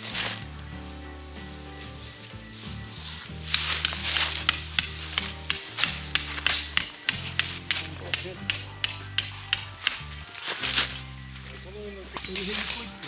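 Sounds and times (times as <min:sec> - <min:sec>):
hammer ringing on tent peg: 0:03.6 - 0:10.2.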